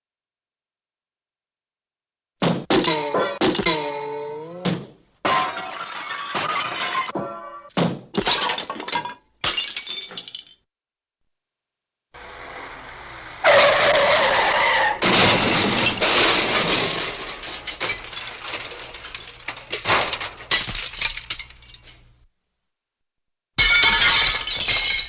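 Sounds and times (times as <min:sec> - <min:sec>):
squealing skid: 0:12.2 - 0:20.5
debris clattering and tinkling: 0:12.2 - 0:22.2
glass breaking: 0:12.2 - 0:22.2, 0:23.6 - 0:25.0
cartoon crash: 0:13.3 - 0:20.5.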